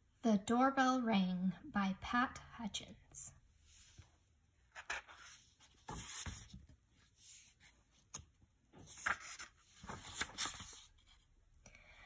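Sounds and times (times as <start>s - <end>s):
book pages turning: 4.7s - 11.2s.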